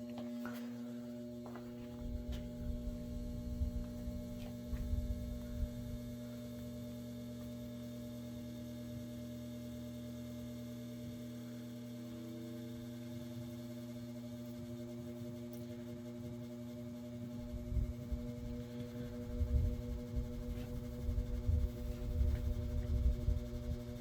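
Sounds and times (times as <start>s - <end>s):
fan motor humming and buzzing: 0.0s - 24.0s
low rumble of moving air: 2.0s - 6.3s, 17.4s - 24.0s.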